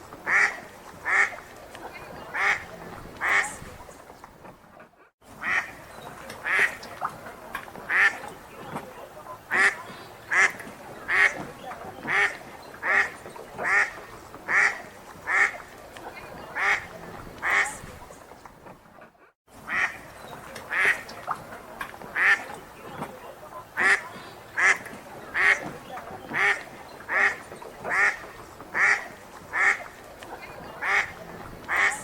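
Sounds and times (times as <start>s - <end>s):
faint lakeside background noise: 0.0s - 32.0s
duck quacking: 0.2s - 3.7s, 5.4s - 5.8s, 6.4s - 6.8s, 7.9s - 8.3s, 9.5s - 15.7s, 16.4s - 17.8s, 19.7s - 20.0s, 20.7s - 21.1s, 22.2s - 23.0s, 23.6s - 32.0s.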